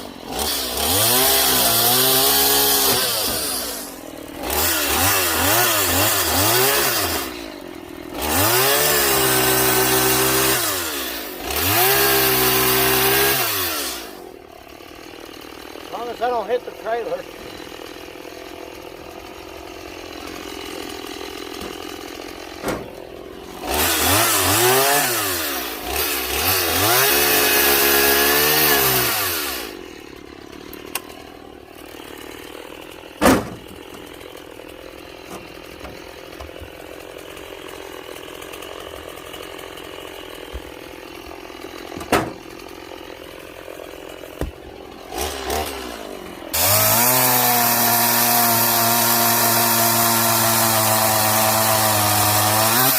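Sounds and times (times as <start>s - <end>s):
chainsaw cutting wood: 0.0s - 52.9s
chainsaw idling and revving: 0.0s - 52.9s
sharp knocks: 33.2s - 34.1s, 41.9s - 42.4s.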